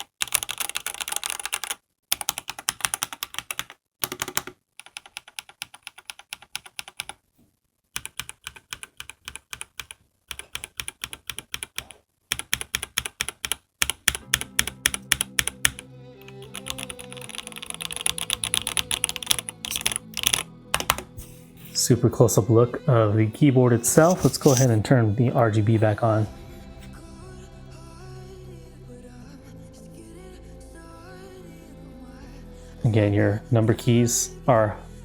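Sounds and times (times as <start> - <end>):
fast typing on mechanical keyboard: 0.0 - 7.2, 8.0 - 21.1
background music: 14.2 - 35.0.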